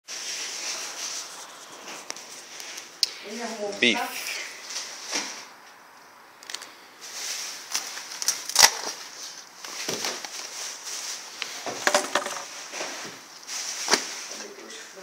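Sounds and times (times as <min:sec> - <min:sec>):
dog chewing and tearing meat: 0:07.7 - 0:09.0.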